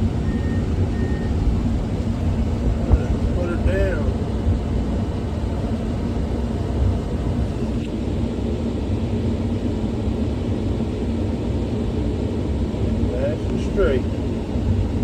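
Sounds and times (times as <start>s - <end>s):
excavator diesel engine rumbling: 0.0s - 7.8s.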